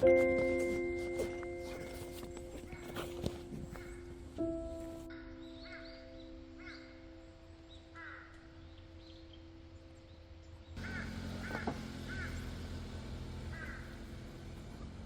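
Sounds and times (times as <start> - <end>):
outdoor background noise: 0.0 - 15.0
crows cawing: 5.1 - 7.0, 7.9 - 8.6, 10.8 - 12.6, 13.4 - 14.2.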